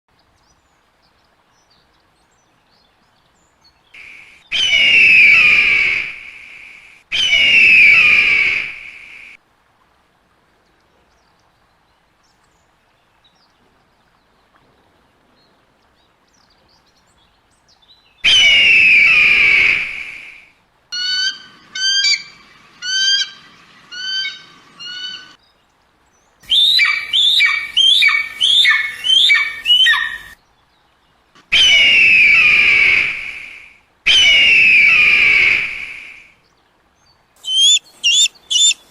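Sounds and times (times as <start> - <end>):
eagle screams: 4.0 - 6.2, 7.1 - 9.0, 18.2 - 20.4, 26.5 - 30.4, 31.5 - 36.2, 37.4 - 38.9
eagle piping whistles: 4.0 - 9.3, 18.2 - 20.4, 21.0 - 25.4, 26.5 - 30.4, 31.5 - 36.3, 37.4 - 38.9
eagle chattering call: 26.5 - 30.4, 37.4 - 38.9.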